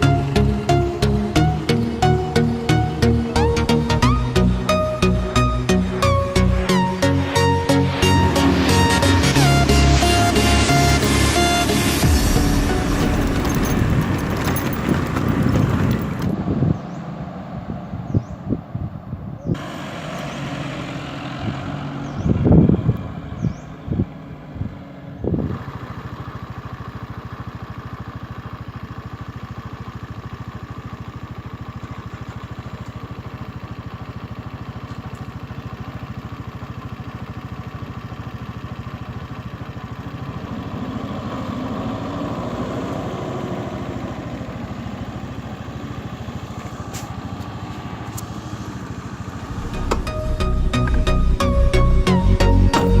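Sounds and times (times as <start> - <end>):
music: 0.0 - 13.9, 49.7 - 53.0
vehicle engine running: 0.0 - 53.0.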